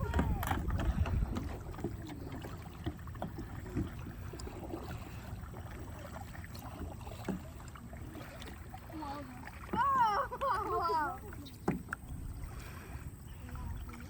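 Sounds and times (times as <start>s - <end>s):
wind on microphone: 0.0s - 2.4s, 12.0s - 14.0s
water splashes and knocks: 0.0s - 14.0s.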